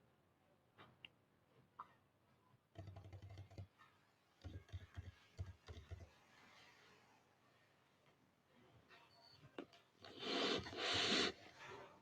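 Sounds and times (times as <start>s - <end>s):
typing on keyboard: 2.8s - 3.7s, 4.4s - 6.2s.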